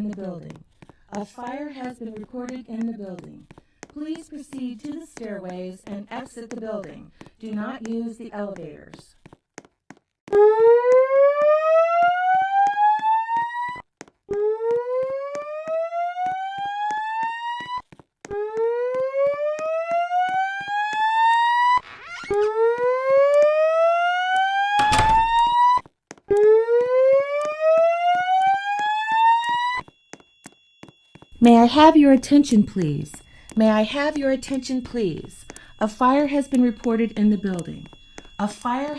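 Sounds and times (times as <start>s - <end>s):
fire alarm whoop tone: 10.3s - 38.9s.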